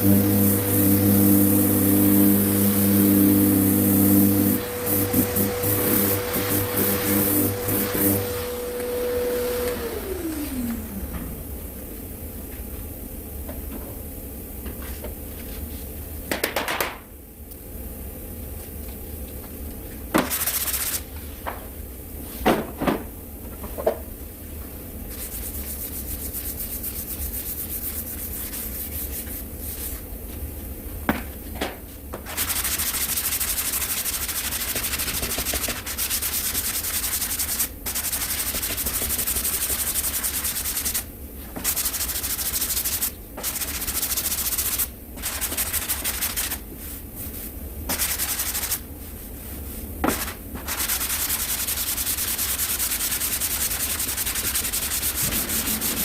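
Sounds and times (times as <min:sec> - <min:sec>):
sandpaper sanding filler: 0:00.0 - 0:08.5, 0:25.1 - 0:29.9, 0:32.3 - 0:46.6, 0:47.9 - 0:48.9, 0:50.1 - 0:56.0.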